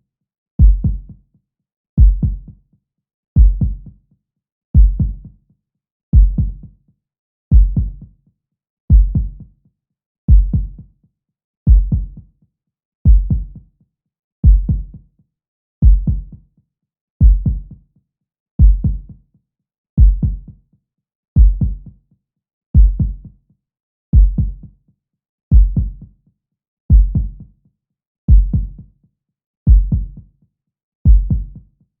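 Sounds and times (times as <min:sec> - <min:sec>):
heartbeat double thumps: 0:00.6 - 0:01.1, 0:02.0 - 0:02.4, 0:03.4 - 0:03.8, 0:04.8 - 0:05.2, 0:06.2 - 0:06.6, 0:07.5 - 0:08.0, 0:08.9 - 0:09.4, 0:10.3 - 0:10.8, 0:11.7 - 0:12.2, 0:13.1 - 0:13.5, 0:14.4 - 0:14.9, 0:15.8 - 0:16.3, 0:17.2 - 0:17.6, 0:18.6 - 0:19.0, 0:20.0 - 0:20.4, 0:21.4 - 0:21.8, 0:22.8 - 0:23.2, 0:24.2 - 0:24.6, 0:25.5 - 0:26.0, 0:26.9 - 0:27.4, 0:28.3 - 0:28.8, 0:29.7 - 0:30.2, 0:31.1 - 0:31.6.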